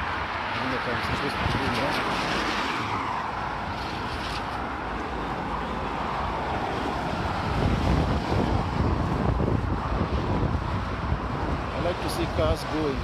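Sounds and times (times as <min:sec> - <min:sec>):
car passing: 0:00.0 - 0:13.0
steady traffic hiss: 0:11.7 - 0:13.0.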